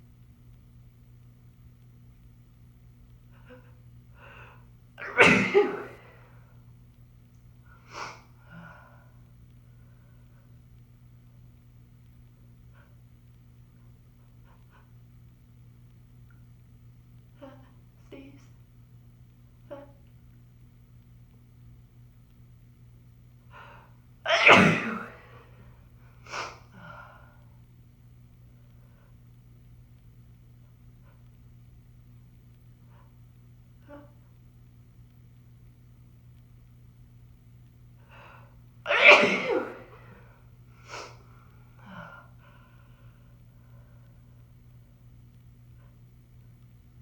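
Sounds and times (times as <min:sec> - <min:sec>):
woman sneezing: 0:05.0 - 0:06.1, 0:24.3 - 0:25.3, 0:38.9 - 0:40.0.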